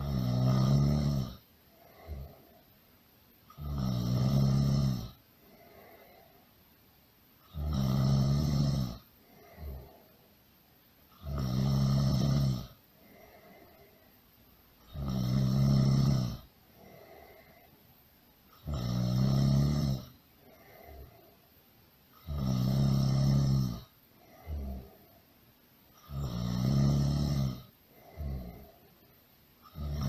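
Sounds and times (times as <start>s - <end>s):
loud snoring: 0.0s - 2.5s, 3.5s - 6.2s, 7.4s - 10.1s, 11.1s - 13.9s, 14.8s - 17.6s, 18.6s - 21.2s, 22.2s - 25.0s, 26.0s - 28.9s, 29.6s - 30.0s.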